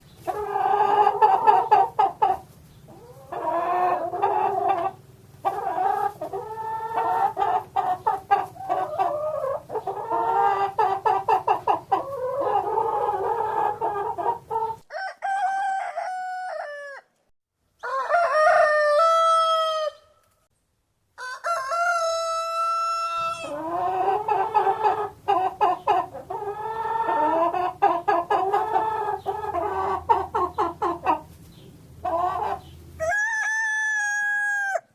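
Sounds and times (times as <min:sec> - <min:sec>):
chickens clucking and cackling: 0:00.0 - 0:20.4, 0:21.1 - 0:34.9
rooster crowing: 0:14.9 - 0:17.2, 0:17.8 - 0:20.1, 0:21.2 - 0:23.6, 0:33.0 - 0:34.9.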